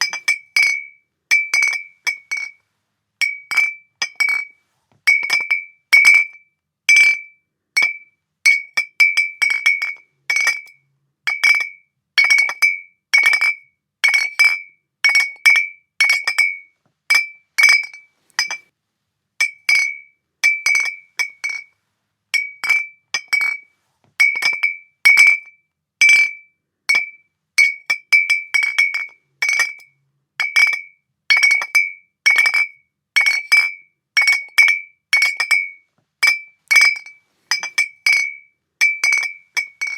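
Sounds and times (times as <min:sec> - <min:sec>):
glass bottles clinking: 0:00.0 - 0:02.6, 0:03.2 - 0:04.5, 0:17.2 - 0:18.6, 0:19.4 - 0:21.7, 0:24.2 - 0:25.4, 0:27.0 - 0:29.8, 0:30.4 - 0:39.9.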